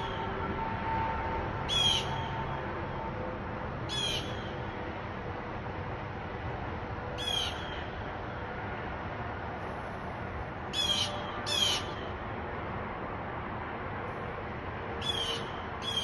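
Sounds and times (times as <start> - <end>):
steady outdoor hiss: 0.0 - 16.0
bird giving harsh calls: 10.8 - 11.9.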